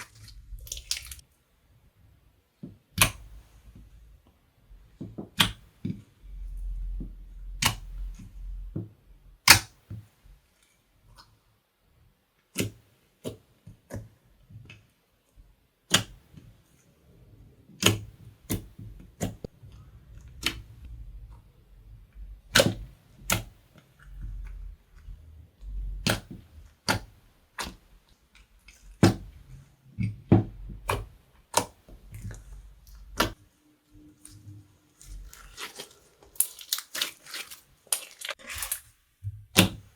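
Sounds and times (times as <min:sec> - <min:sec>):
sticky slime clicks and pops: 0:09.4 - 0:09.7.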